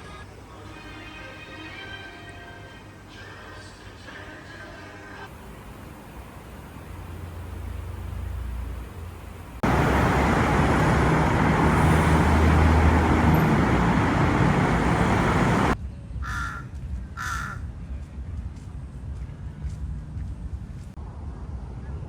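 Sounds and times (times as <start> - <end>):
loud rushing noise: 5.6 - 15.8.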